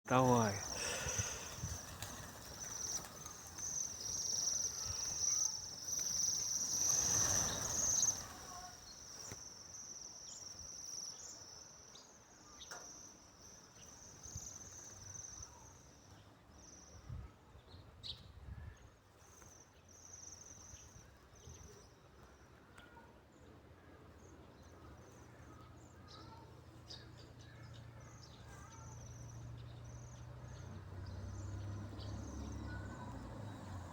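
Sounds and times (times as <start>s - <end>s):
insects trilling: 0.2s - 16.1s.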